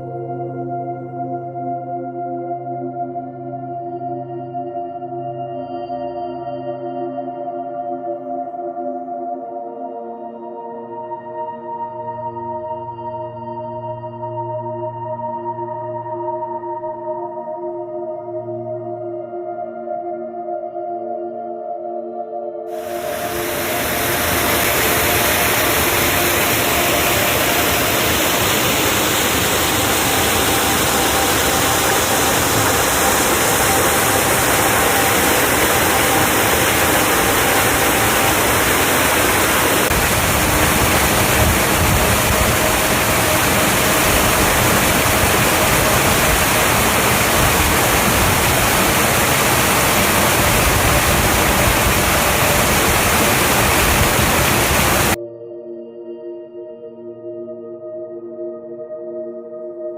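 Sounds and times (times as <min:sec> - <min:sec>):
waterfall pouring: 0:22.7 - 0:55.2.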